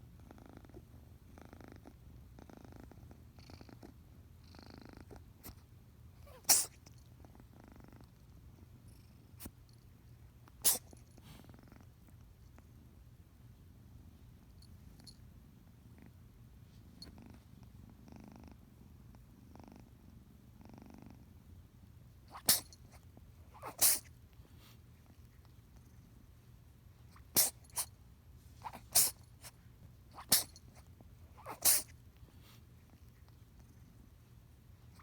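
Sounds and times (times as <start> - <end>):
kitten purring: 0.0 - 9.6, 10.5 - 13.0, 15.4 - 21.6, 22.2 - 26.3, 27.0 - 27.9, 28.6 - 34.2
kitten sneezing: 6.2 - 6.9, 10.6 - 11.4, 22.3 - 24.2, 27.1 - 27.9, 28.6 - 29.5, 30.1 - 30.8, 31.4 - 32.0.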